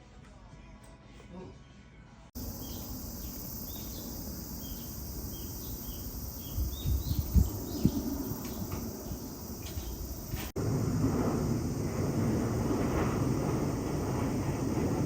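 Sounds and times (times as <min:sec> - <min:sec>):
outdoor background noise: 0:00.0 - 0:15.0
bird chirping: 0:02.4 - 0:10.4
low rumbles on microphone: 0:05.0 - 0:15.0.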